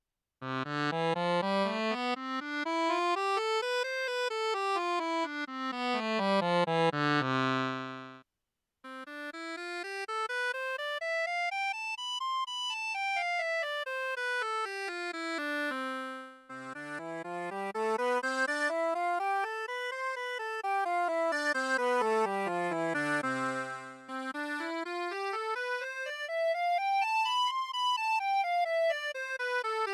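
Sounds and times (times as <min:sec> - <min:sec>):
accordion playing scale runs: 0:00.5 - 0:08.1, 0:16.5 - 0:29.9.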